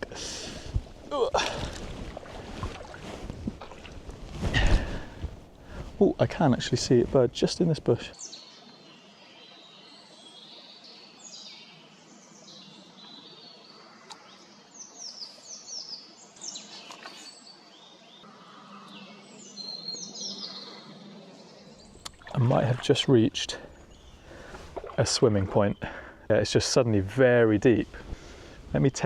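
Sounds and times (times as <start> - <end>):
faint steady hiss: 0.0 - 19.9
songbird singing: 4.6 - 29.0.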